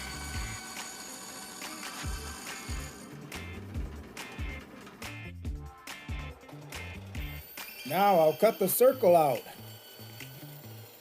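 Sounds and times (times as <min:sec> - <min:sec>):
bandsaw whining: 0:00.0 - 0:05.4, 0:06.2 - 0:11.0
music with thudding beat: 0:02.0 - 0:07.7.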